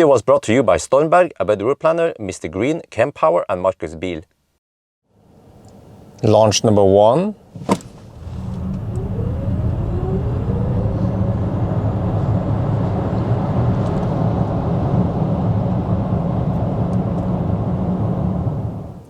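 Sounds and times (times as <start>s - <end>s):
tyre and road rumble: 7.5s - 11.4s
electric motor whine: 8.0s - 12.2s.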